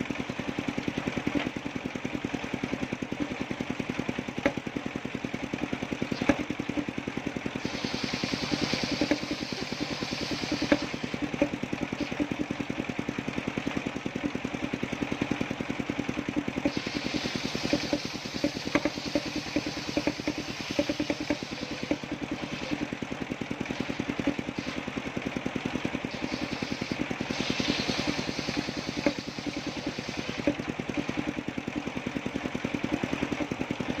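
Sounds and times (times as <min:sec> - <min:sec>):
sawmill engine running: 0:00.0 - 0:34.0
saw blade cutting hiss: 0:07.6 - 0:12.3, 0:16.6 - 0:22.8, 0:26.1 - 0:30.5.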